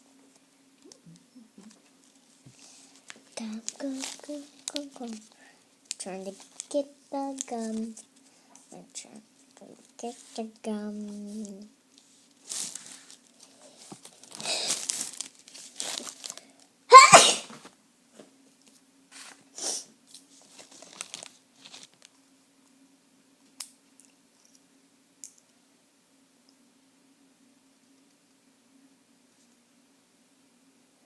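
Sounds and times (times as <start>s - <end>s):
gum wrapper crinkling: 1.6s - 8.1s, 11.4s - 16.6s, 20.1s - 22.2s
child sneezing: 14.4s - 14.8s, 16.9s - 17.6s.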